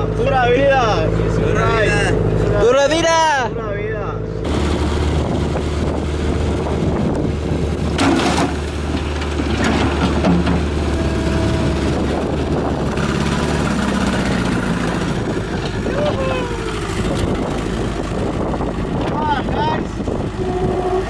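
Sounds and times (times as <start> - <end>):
heavy machine engine running: 4.2 - 21.0.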